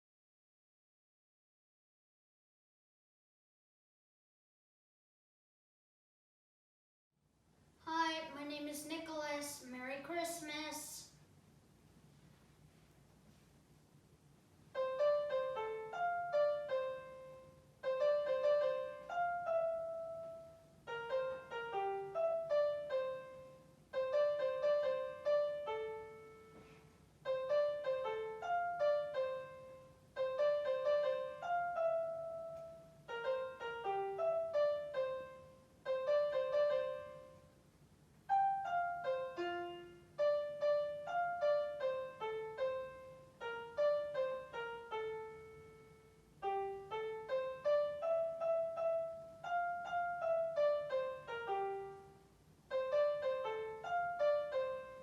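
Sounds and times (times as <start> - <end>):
faint steady hum: 7.2 - 55.0
piano melody: 14.7 - 37.6, 38.3 - 55.0.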